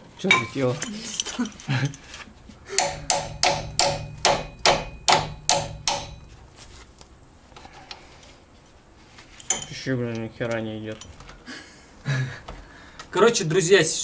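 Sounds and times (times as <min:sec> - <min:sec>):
hammer striking metal: 0:00.3 - 0:00.6, 0:02.7 - 0:06.4, 0:09.5 - 0:09.8.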